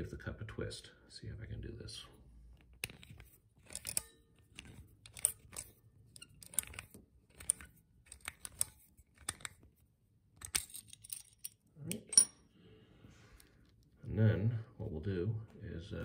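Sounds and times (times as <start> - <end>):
pliers clicking and scraping metal: 2.6 - 9.6, 10.4 - 12.4.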